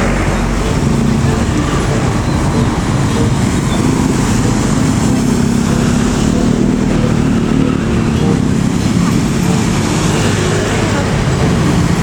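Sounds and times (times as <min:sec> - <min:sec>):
heavy vehicle engine drone: 0:00.0 - 0:12.0
rumble of passing vehicles: 0:00.0 - 0:12.0.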